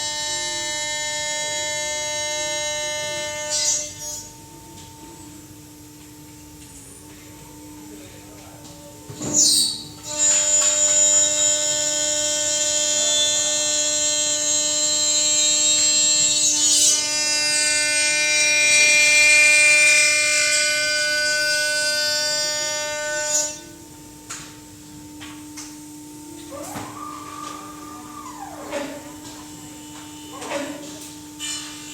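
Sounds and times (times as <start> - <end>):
machine high-pitched whine: 9.2 - 23.8, 25.9 - 31.9.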